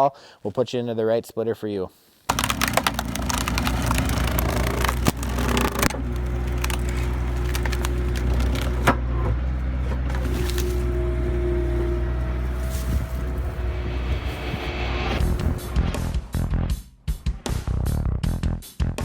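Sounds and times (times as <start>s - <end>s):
sharp wood cracks: 2.3s - 9.1s
wood splitter whine: 2.3s - 15.7s
skid steer engine running: 2.3s - 15.8s.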